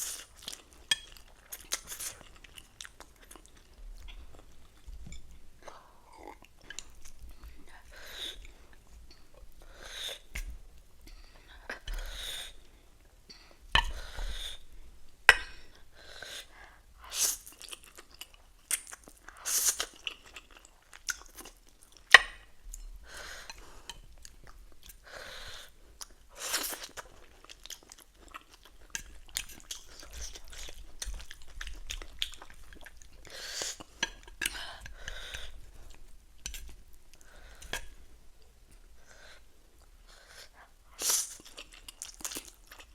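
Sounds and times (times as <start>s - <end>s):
chewing and crunching food: 0.0s - 9.7s, 17.4s - 22.9s, 25.7s - 39.1s, 39.7s - 42.9s.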